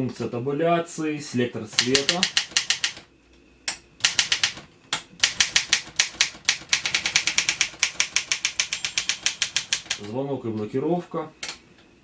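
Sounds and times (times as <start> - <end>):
manual typewriter typing: 1.7 - 3.0, 4.0 - 10.2.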